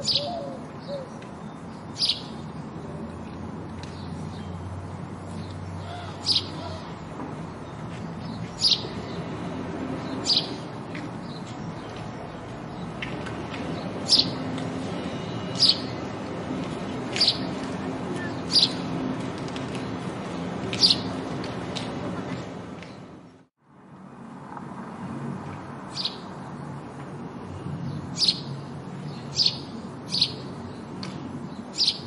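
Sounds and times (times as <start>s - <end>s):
sparrow chirping: 0.0s - 2.8s, 5.3s - 6.8s, 7.5s - 9.4s, 10.0s - 13.0s, 13.7s - 14.5s, 15.1s - 16.4s, 17.0s - 17.6s, 18.2s - 19.0s, 20.7s - 21.2s, 25.9s - 26.2s, 27.8s - 30.9s, 31.5s - 32.0s.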